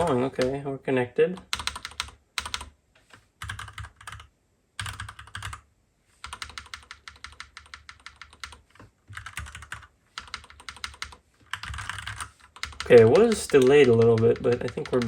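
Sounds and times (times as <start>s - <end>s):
mechanical keyboard typing: 1.4s - 2.7s, 3.4s - 5.6s, 6.2s - 15.0s.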